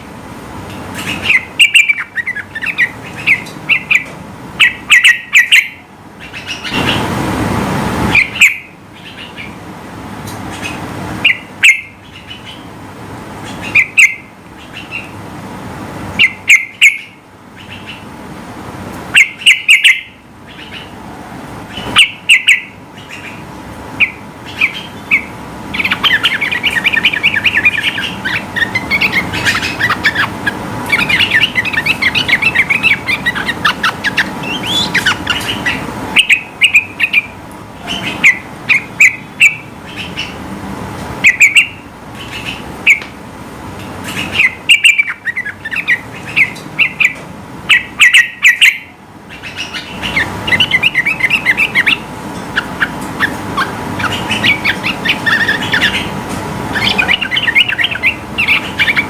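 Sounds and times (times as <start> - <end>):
bird singing bubbling phrases: 1.0 - 7.0, 13.5 - 15.2, 24.0 - 40.4, 44.1 - 59.0.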